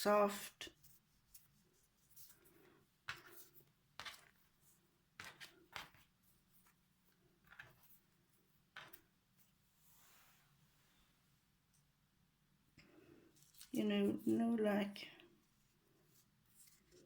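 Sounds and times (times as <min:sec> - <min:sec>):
rustling and scraping of packaging: 0:13.3 - 0:13.8.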